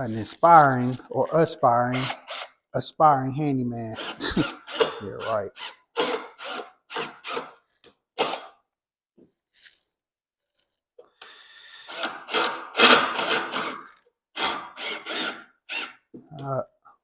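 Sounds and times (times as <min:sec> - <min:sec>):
cordless drill driving screw into wood: 0:02.0 - 0:02.6, 0:04.0 - 0:07.6, 0:08.2 - 0:08.6, 0:11.9 - 0:16.0.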